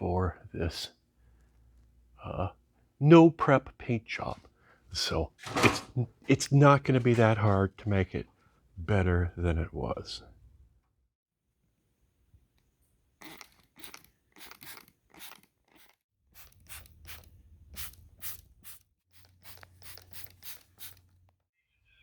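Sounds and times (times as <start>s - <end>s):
paint scraping strokes: 18.2s - 21.1s.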